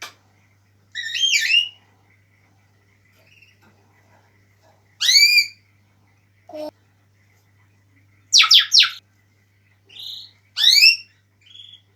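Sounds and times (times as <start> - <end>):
parrot whistling: 1.0 - 1.8, 5.0 - 5.6, 8.4 - 9.0, 10.0 - 11.8.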